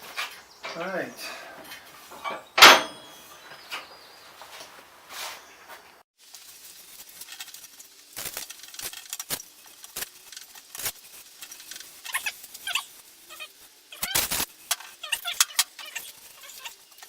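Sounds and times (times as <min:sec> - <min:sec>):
metal tools clicking and knocking: 0:14.0 - 0:16.7.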